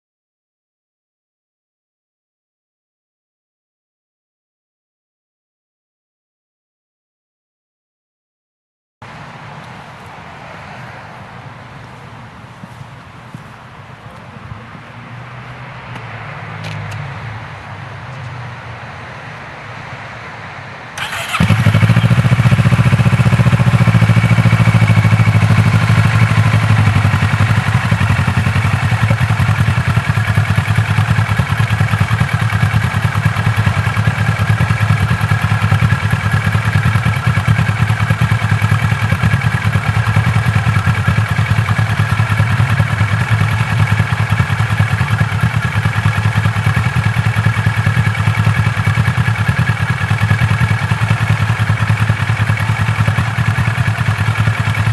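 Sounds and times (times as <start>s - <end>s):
motorcycle engine starting and idling: 21.0s - 54.9s.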